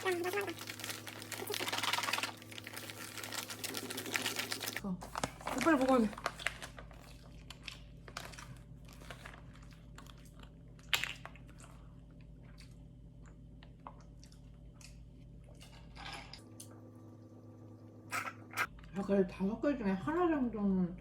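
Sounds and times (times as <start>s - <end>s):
chewing: 6.4s - 15.0s.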